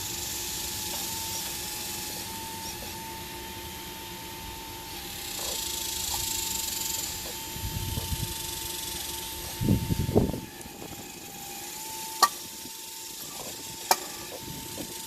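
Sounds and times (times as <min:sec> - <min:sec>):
hiss: 0:00.0 - 0:03.0
hydraulic pump whining: 0:00.0 - 0:15.0.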